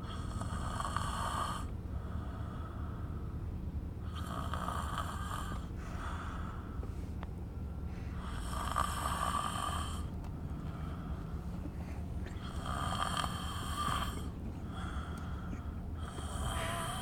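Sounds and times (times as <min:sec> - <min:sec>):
person snoring: 0:00.0 - 0:01.7, 0:04.1 - 0:05.6, 0:08.2 - 0:10.1, 0:12.4 - 0:15.1, 0:16.0 - 0:17.0
steady low hum: 0:00.0 - 0:17.0.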